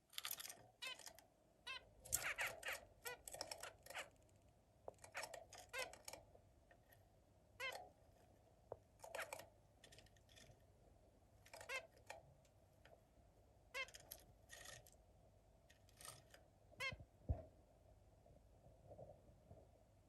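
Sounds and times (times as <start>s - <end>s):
finch calls: 1.7s - 4.1s, 9.1s - 9.4s.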